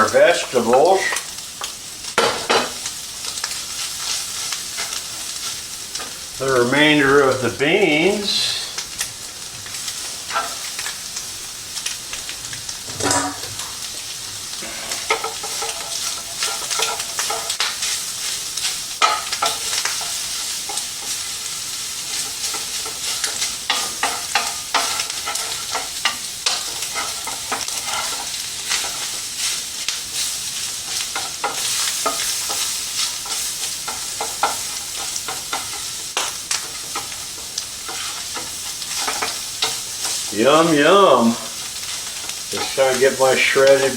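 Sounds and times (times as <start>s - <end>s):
food sizzling in a frying pan: 0.0s - 43.9s
utensil scraping a pan: 10.1s - 10.9s, 12.8s - 13.9s, 14.5s - 29.6s, 30.2s - 43.9s.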